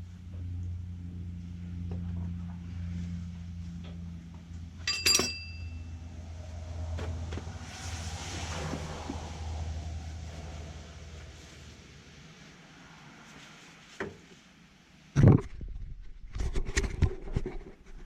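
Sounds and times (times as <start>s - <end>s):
steady low hum: 0.0s - 13.9s
sharp metallic clinks: 4.8s - 6.0s
soft rushing noise: 5.4s - 14.7s.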